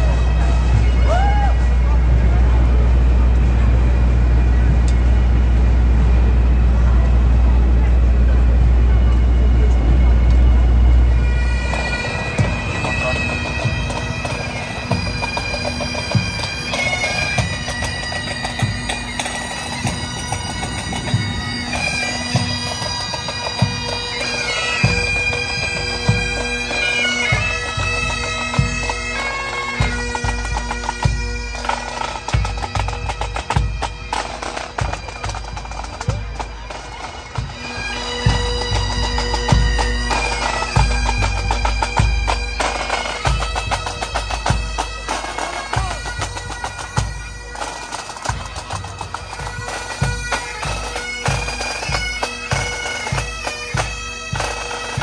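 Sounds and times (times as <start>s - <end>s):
bagpipes playing march tune: 0.0s - 55.0s.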